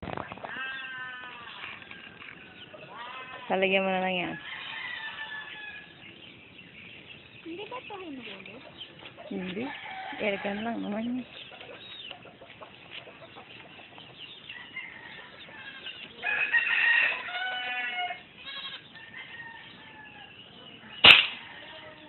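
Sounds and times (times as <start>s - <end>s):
small birds chirping: 0.1s - 22.0s
rooster crowing: 4.3s - 6.0s, 14.6s - 18.2s
air rifle shot: 21.0s - 21.4s.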